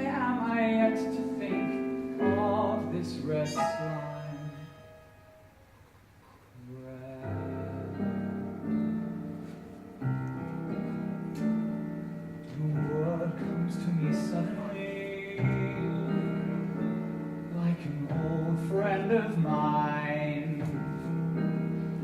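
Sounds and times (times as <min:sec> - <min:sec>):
piano held chords: 0:00.0 - 0:22.0.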